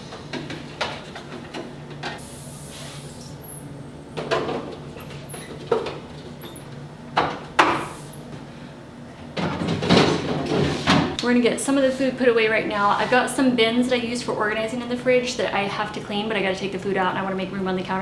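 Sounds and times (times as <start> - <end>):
refrigerator shelves clunking and scraping: 9.3 - 11.2.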